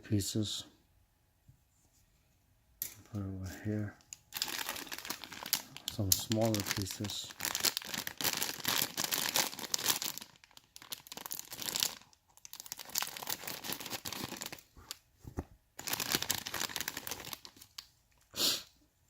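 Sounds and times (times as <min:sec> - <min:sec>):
plastic bags crinkling: 0:04.0 - 0:15.1, 0:15.8 - 0:17.9.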